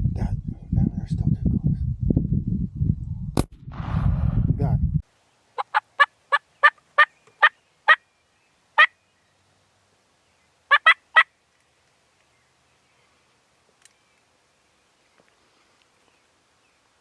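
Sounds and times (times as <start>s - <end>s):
turkey calling: 5.6s - 8.0s, 10.7s - 11.3s.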